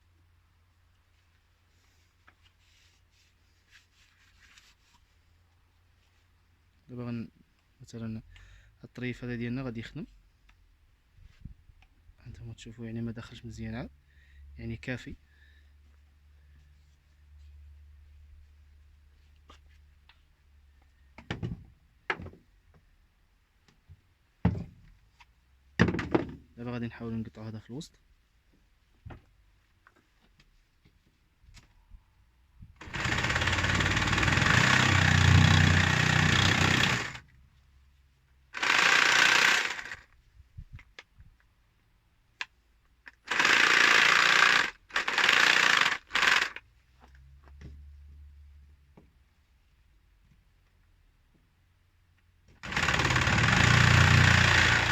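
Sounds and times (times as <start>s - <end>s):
power tool cutting: 32.8s - 37.2s, 38.6s - 40.0s, 43.3s - 46.6s, 52.6s - 54.9s.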